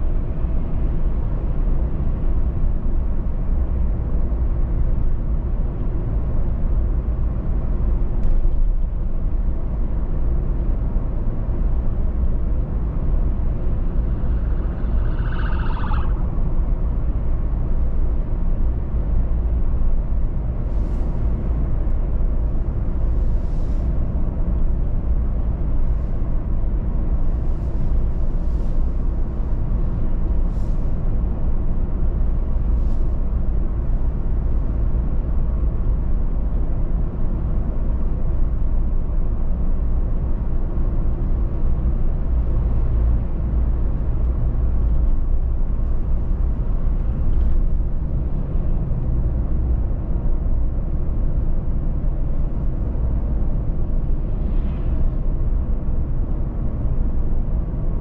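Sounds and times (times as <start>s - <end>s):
car tyres and engine rumble: 0.0s - 58.0s
wavering higher tone: 14.4s - 16.3s.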